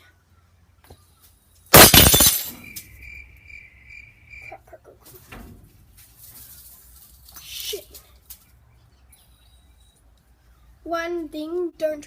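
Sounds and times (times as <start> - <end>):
wine glass shattering: 1.7 - 2.7.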